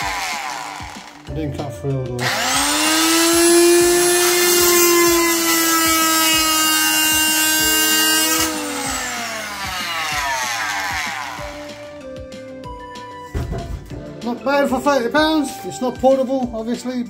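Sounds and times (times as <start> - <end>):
motor winding down whine: 0.0 - 1.3, 2.2 - 11.9
oscillating multi-tool running: 0.0 - 1.3, 2.2 - 11.7.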